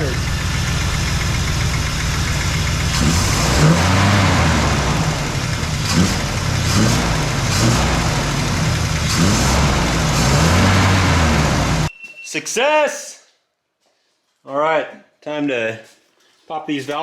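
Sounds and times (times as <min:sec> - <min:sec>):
car engine revving: 0:00.0 - 0:11.9.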